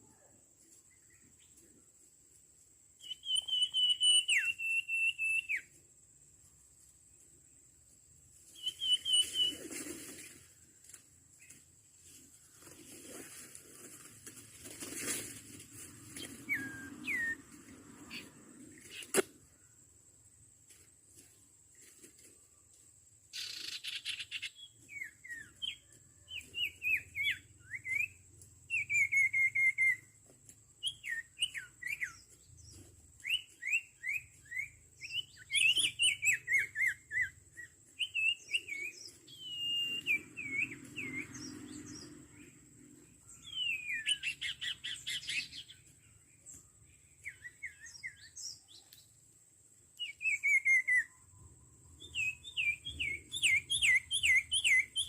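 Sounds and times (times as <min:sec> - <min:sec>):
birds whistling calls: 0:03.0 - 0:05.7, 0:08.6 - 0:10.2, 0:16.1 - 0:19.2, 0:23.4 - 0:30.2, 0:30.8 - 0:42.5, 0:43.3 - 0:45.9, 0:46.9 - 0:49.0, 0:50.0 - 0:51.3, 0:52.0 - 0:55.0.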